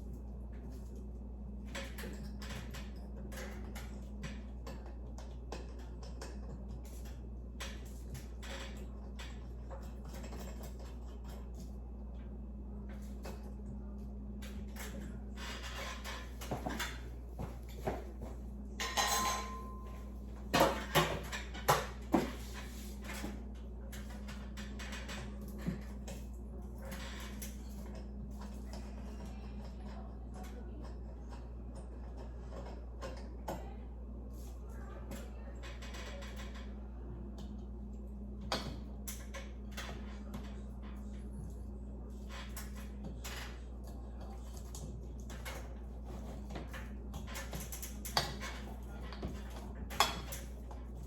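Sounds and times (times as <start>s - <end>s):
steady low hum: 0.0s - 51.0s.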